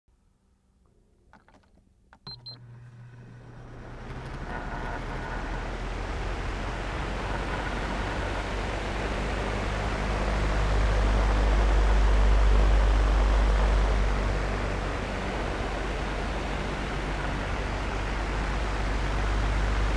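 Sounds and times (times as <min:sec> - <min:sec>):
fan motor humming: 0:02.3 - 0:19.9
fan blades rushing air: 0:02.4 - 0:19.9.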